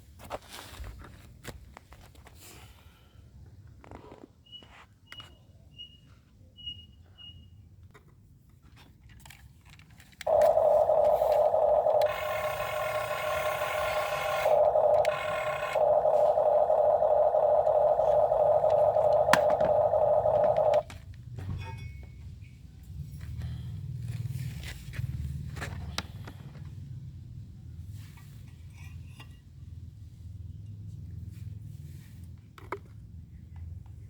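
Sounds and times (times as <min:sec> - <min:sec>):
excavator high-pitched whine: 0:10.3 - 0:20.8.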